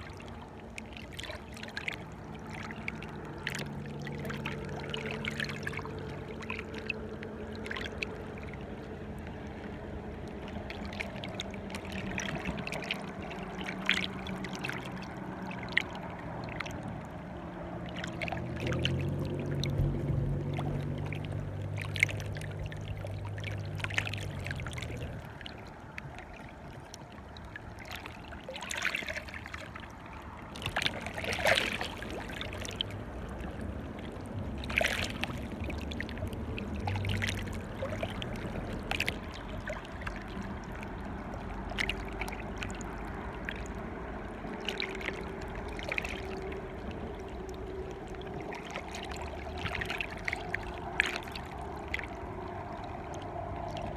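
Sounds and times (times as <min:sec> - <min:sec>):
water lapping and splashing: 0:00.0 - 0:53.9
low hum: 0:02.1 - 0:27.7.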